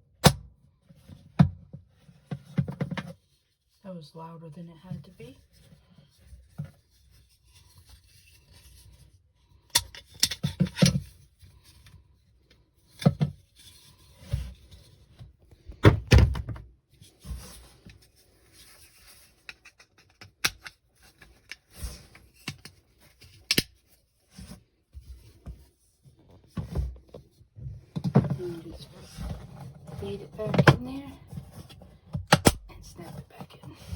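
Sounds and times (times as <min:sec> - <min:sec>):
handling knocks and thunks: 0:15.6 - 0:16.7
rubbing and scraping: 0:17.0 - 0:33.9.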